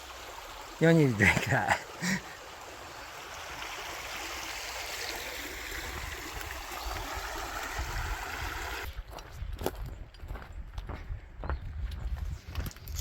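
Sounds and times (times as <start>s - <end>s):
stream of water running: 0.0s - 9.0s.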